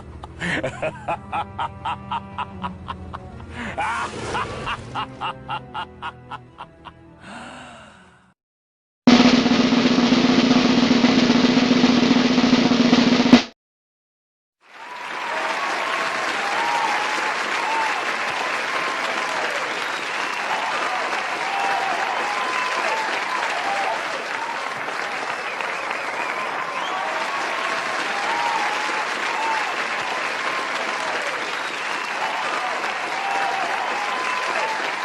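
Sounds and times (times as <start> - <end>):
crowd applauding and cheering: 0.0 - 7.4, 14.6 - 35.0
snare drum roll: 9.1 - 13.5.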